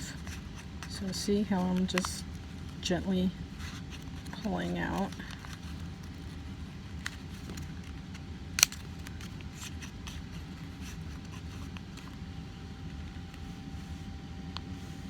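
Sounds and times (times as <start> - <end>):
paper crackling and rustling: 0.0 - 15.0
paper snapping: 8.6 - 10.2.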